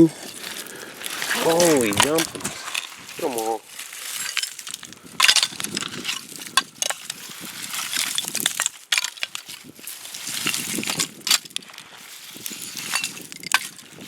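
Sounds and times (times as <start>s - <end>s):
scrap metal and glass clinking: 3.8s - 11.6s, 12.4s - 14.0s.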